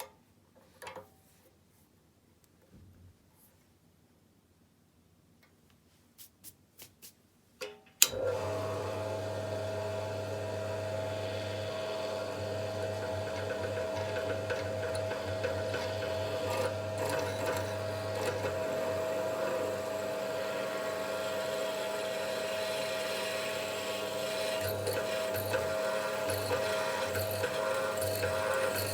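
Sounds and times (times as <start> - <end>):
electric drill motor whining: 8.3 - 28.9.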